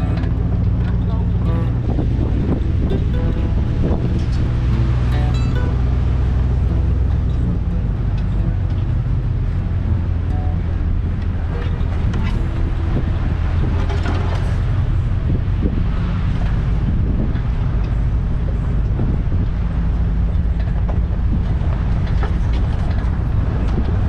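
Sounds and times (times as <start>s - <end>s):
pickup engine hum: 0.0s - 24.0s
knocks and rattles over bumps: 7.1s - 24.0s.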